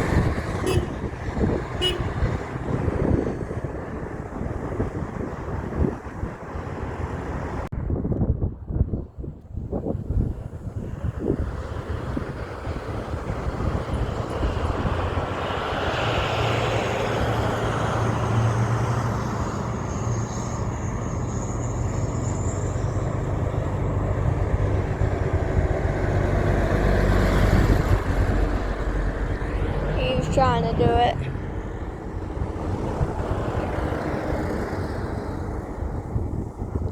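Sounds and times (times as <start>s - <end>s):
tyre and road noise: 0.0s - 36.9s
heavy truck engine drone: 10.1s - 36.9s.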